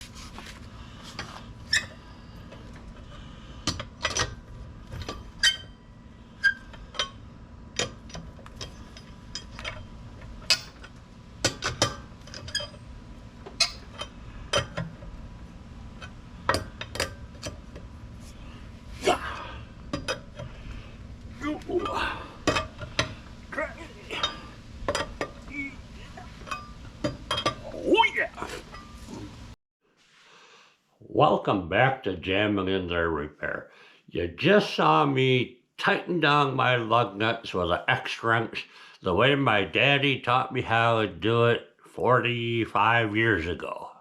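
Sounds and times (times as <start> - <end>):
lug wrench clinking on lug nuts: 2.5 - 15.1, 16.0 - 17.9, 19.4 - 20.8, 21.8 - 23.4, 24.2 - 25.5, 26.3 - 27.7.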